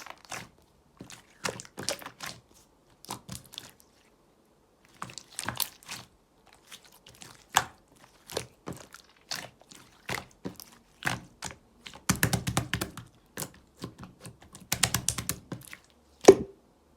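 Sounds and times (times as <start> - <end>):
slime crackling: 0.0 - 4.0.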